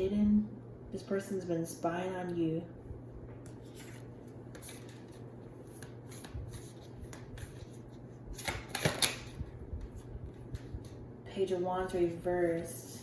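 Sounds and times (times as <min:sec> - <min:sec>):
faint low hum: 0:00.0 - 0:13.0
cards being shuffled: 0:03.5 - 0:11.0.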